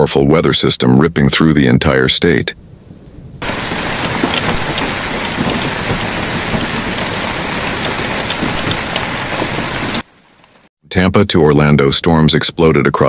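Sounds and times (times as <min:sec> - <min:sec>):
heavy rain with hail: 0:03.4 - 0:10.7.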